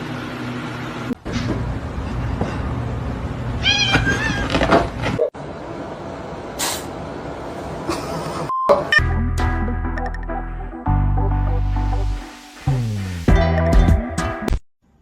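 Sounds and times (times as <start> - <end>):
cat meowing: 3.6 - 4.6.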